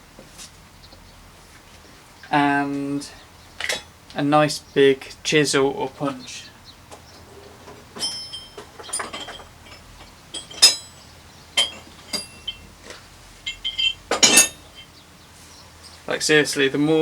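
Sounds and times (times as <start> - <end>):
metal hand tools clinking: 8.0 - 15.0.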